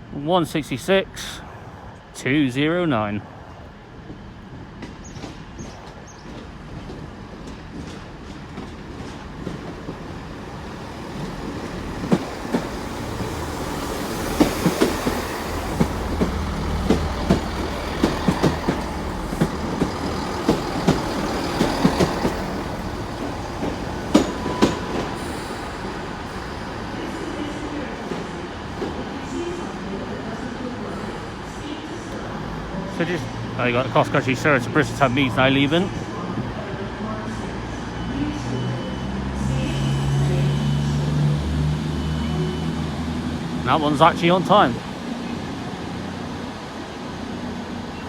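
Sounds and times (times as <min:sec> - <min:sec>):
diesel train engine: 0:00.0 - 0:48.0
train wheels clacking over rail joints: 0:11.2 - 0:25.4
train squeal: 0:11.2 - 0:29.0, 0:37.2 - 0:43.1.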